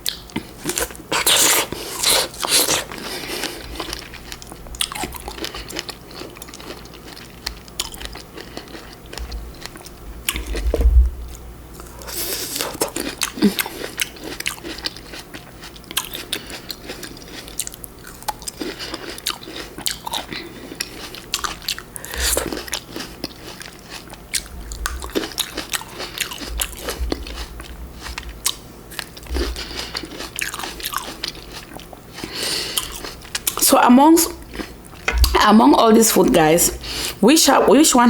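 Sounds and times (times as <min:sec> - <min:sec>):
biting and chewing fruit: 0:00.0 - 0:33.7, 0:34.3 - 0:35.9
soft low thumps: 0:10.6 - 0:11.3, 0:35.1 - 0:35.5.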